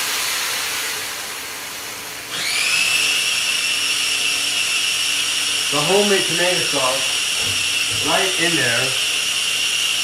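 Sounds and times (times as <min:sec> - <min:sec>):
electric motor whining: 0:04.6 - 0:10.0.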